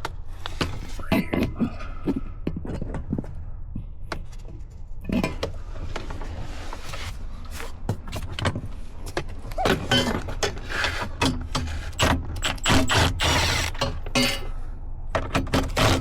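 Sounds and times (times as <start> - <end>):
hand tools on metal: 9.6 - 14.6.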